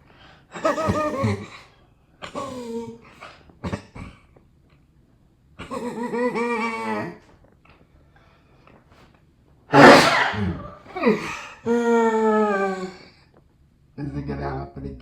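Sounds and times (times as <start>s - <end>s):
loud sneeze: 9.7s - 11.4s.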